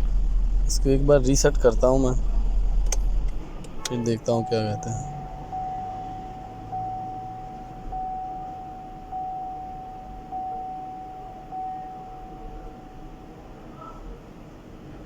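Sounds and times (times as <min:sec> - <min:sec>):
electronic warning chime dinging: 0:03.9 - 0:13.4.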